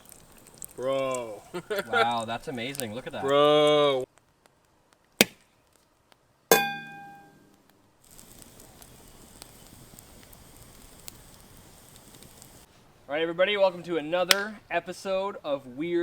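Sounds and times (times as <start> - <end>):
small ticks: 0.0 - 1.2
sharp crack: 5.2 - 5.8
heavy metallic ringing hit: 6.5 - 7.4.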